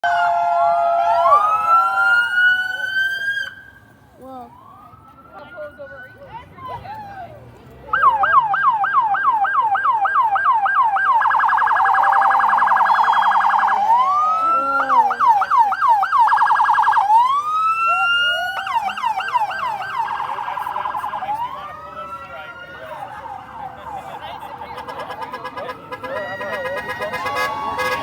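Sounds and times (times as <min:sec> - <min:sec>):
electronic siren cycling tones: 0:08.0 - 0:21.8.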